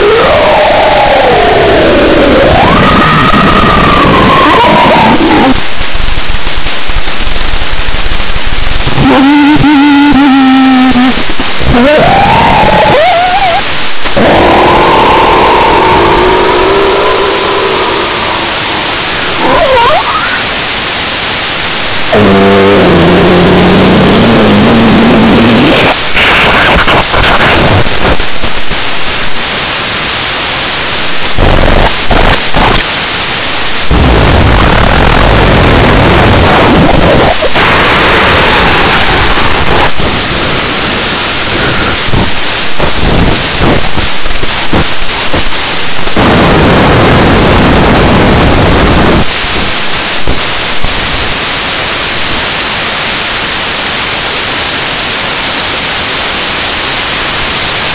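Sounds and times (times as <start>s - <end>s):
harsh white-noise static: 0.0s - 57.9s.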